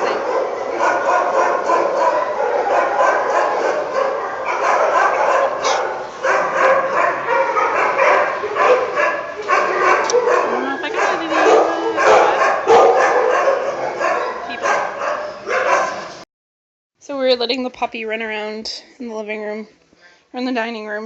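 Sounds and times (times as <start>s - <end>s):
dogs barking and whining: 0.0s - 16.2s.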